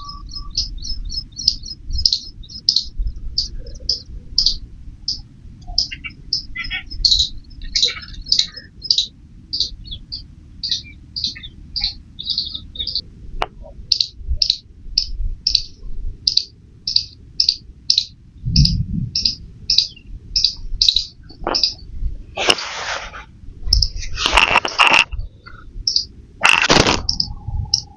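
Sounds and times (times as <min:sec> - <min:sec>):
squirrel chirping: 0:00.0 - 0:27.9
faint clicks: 0:11.8 - 0:21.8.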